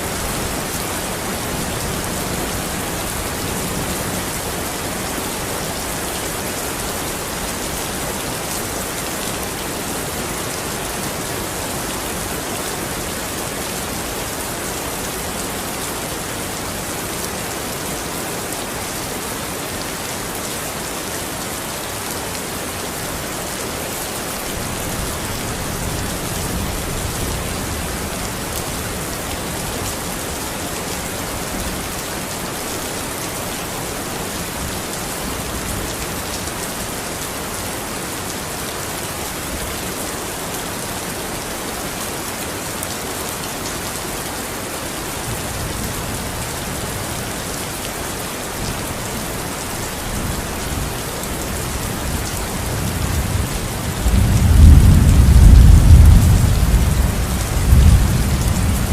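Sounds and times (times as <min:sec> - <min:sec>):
steady rain: 0:00.0 - 0:58.9
low rumble of thunder: 0:52.8 - 0:58.9.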